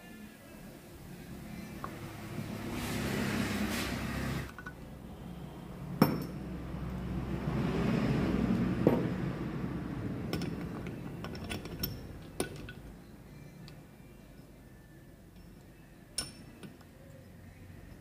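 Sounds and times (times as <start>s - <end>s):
metal engine parts clinking: 4.5s - 4.9s, 6.0s - 6.4s, 10.3s - 13.0s, 15.3s - 16.9s.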